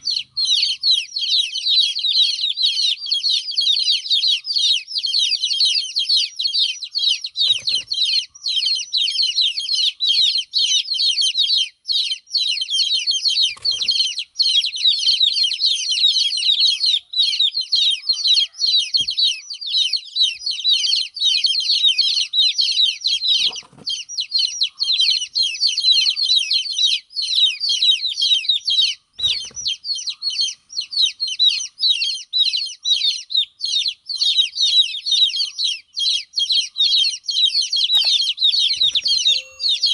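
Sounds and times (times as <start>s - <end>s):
baby chicks peeping: 0.0s - 39.9s.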